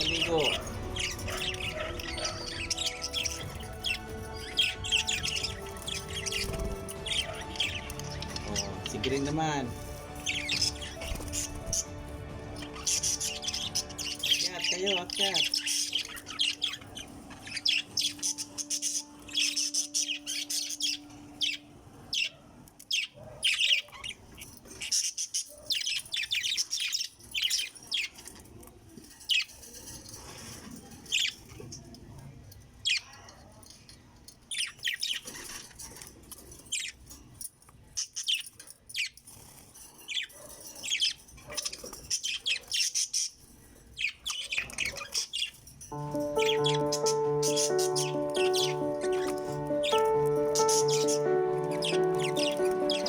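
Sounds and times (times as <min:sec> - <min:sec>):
lovebirds chirping and squawking: 0:00.0 - 0:53.0.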